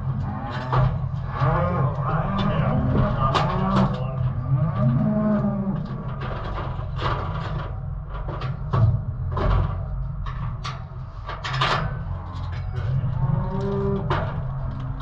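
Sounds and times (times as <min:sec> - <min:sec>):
knocks and clanks: 0:00.0 - 0:15.0
calves mooing: 0:00.2 - 0:06.2.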